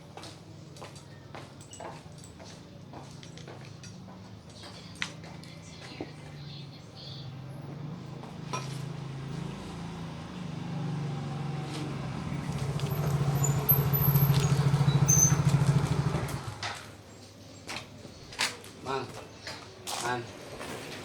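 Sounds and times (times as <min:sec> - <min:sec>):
vehicle engine humming: 0:05.3 - 0:17.0.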